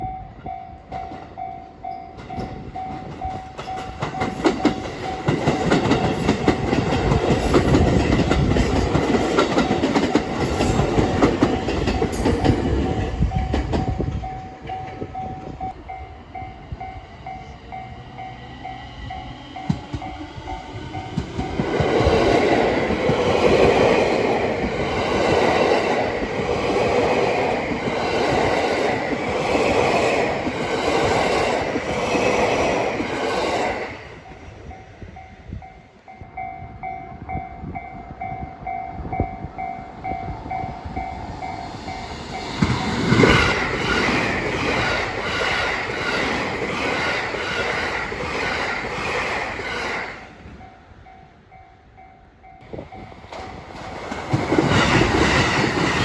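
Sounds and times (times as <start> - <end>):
level-crossing alarm dinging: 0.0 - 6.8
train wheels clacking on rails: 0.4 - 35.3, 39.0 - 51.2, 52.6 - 56.0.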